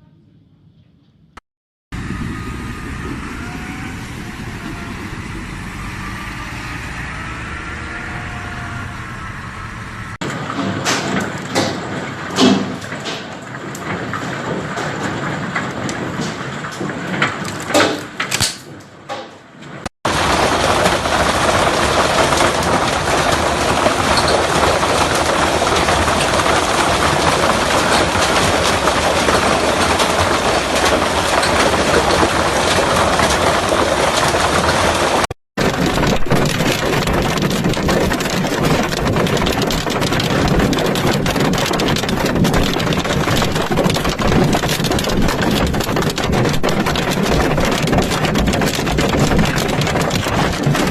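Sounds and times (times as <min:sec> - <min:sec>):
hail and rain pounding: 0:10.2 - 0:17.8, 0:20.1 - 0:50.9.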